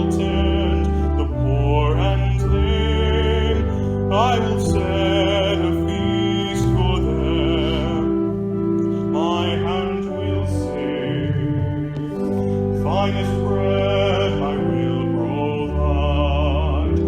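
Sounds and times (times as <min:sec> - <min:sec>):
instrumental accompaniment: 0:00.0 - 0:17.0
person singing a hymn: 0:00.0 - 0:17.0.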